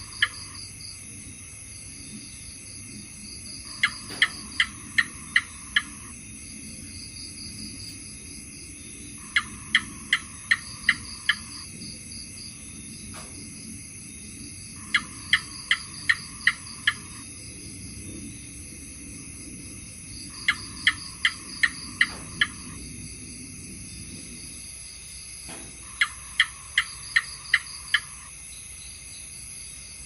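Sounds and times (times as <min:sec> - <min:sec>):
gecko chirping: 0:00.0 - 0:00.6, 0:03.5 - 0:07.9, 0:08.8 - 0:11.7, 0:14.8 - 0:17.2, 0:20.2 - 0:22.8, 0:25.8 - 0:28.3
crickets chirring: 0:00.0 - 0:30.0.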